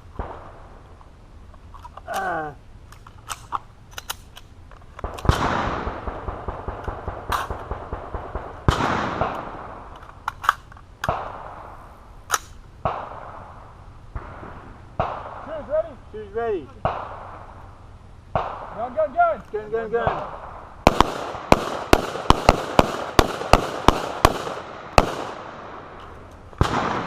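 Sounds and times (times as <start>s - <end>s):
distant gunfire: 5.0s - 9.9s, 12.8s - 13.5s, 14.1s - 15.8s, 16.8s - 17.6s, 18.3s - 19.1s, 20.0s - 26.0s, 26.6s - 27.0s
loud close gunshots: 5.0s - 9.9s, 11.0s - 11.7s, 12.8s - 13.5s, 14.1s - 17.6s, 18.3s - 26.0s, 26.6s - 27.0s.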